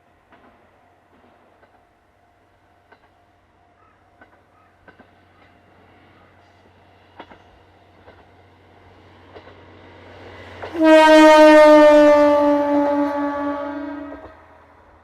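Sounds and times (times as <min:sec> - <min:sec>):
diesel railcar rumble: 0:00.0 - 0:15.0
train horn blast: 0:10.6 - 0:14.7.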